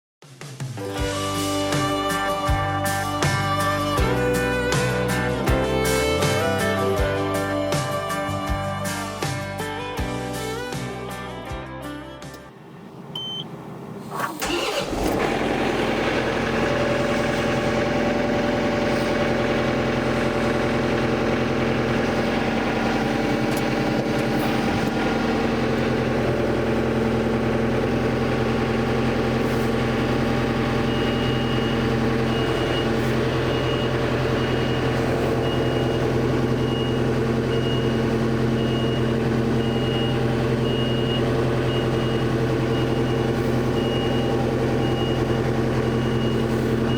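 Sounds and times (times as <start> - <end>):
backhoe engine cranking and idling: 12.1 - 46.9
high electronic beeps: 13.1 - 13.5.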